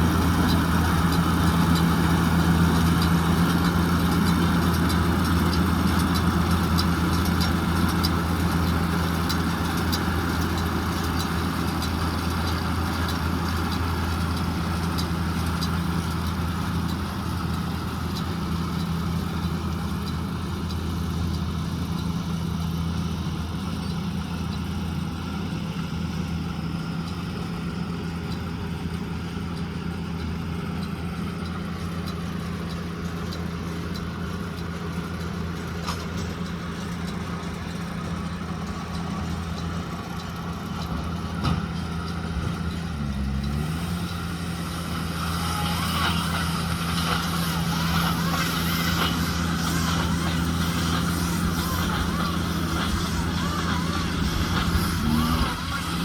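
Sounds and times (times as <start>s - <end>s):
tractor diesel engine running: 0.0s - 56.0s
high-pitched machine noise: 31.8s - 56.0s.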